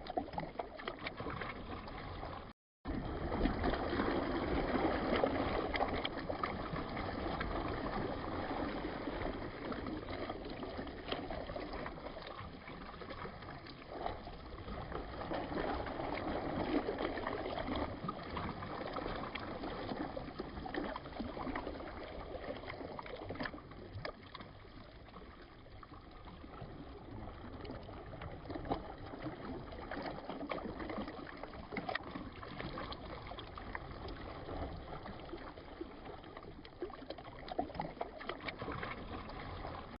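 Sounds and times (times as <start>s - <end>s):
small water splashes: 0.0s - 40.0s.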